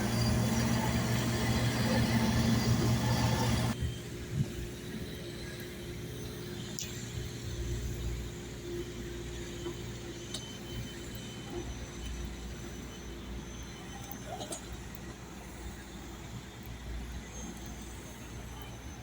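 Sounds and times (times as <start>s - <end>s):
low engine rumble: 0.0s - 4.6s.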